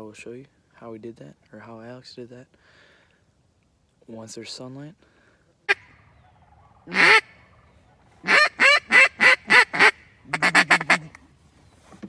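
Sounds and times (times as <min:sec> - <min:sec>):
waterfowl calling: 0:05.7 - 0:11.1.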